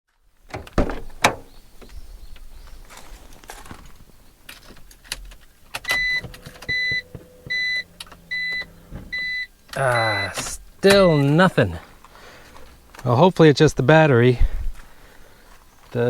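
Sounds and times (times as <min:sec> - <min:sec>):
clicks and knocks: 0:00.5 - 0:01.5
car warning chime beeping: 0:05.9 - 0:11.8.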